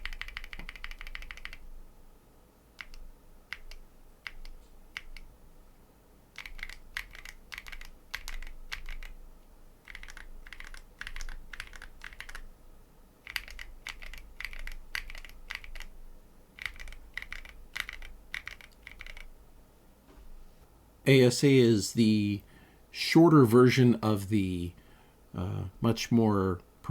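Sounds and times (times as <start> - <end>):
mechanical keyboard typing: 0.0 - 1.6, 2.8 - 5.3, 6.3 - 9.2, 9.8 - 12.5, 13.2 - 15.9, 16.6 - 19.3.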